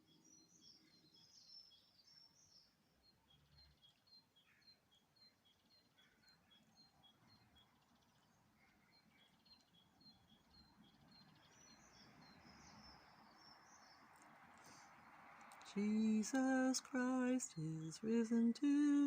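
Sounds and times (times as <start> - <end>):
soft hiss: 12.4 - 19.0.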